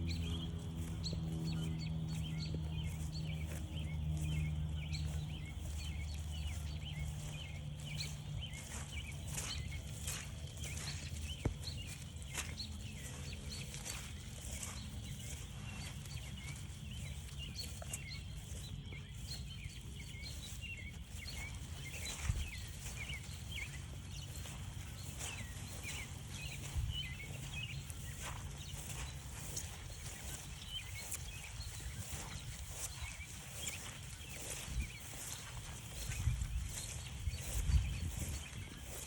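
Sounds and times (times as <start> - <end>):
footsteps on trail: 0.0 - 39.0.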